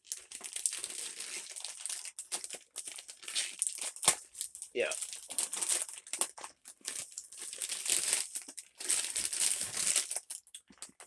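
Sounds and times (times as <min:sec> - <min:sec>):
packaging crinkling and tearing: 0:00.0 - 0:11.0.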